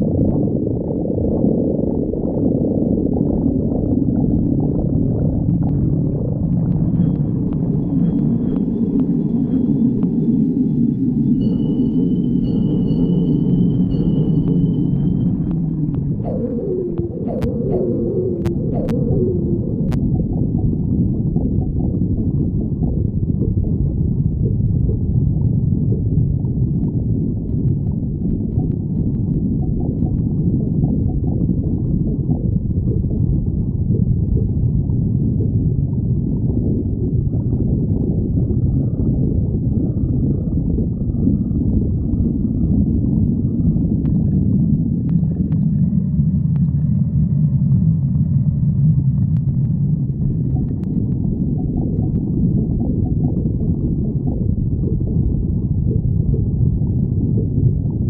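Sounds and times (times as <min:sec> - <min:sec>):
stomach growling: 0:00.0 - 0:10.6, 0:13.8 - 0:58.0
faint high whining tones: 0:06.7 - 0:20.7.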